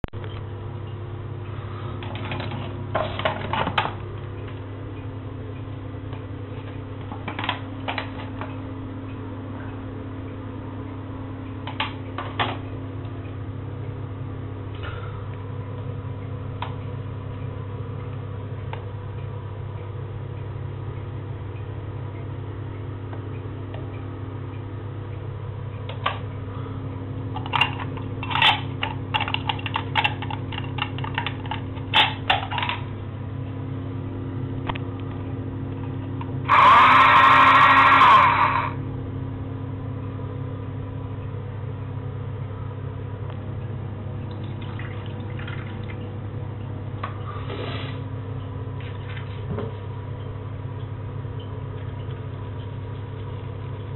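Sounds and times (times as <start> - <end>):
clicks and rattles: 27.4 - 32.9
loud burst of noise: 36.4 - 38.8
toy motor humming: 36.5 - 38.8.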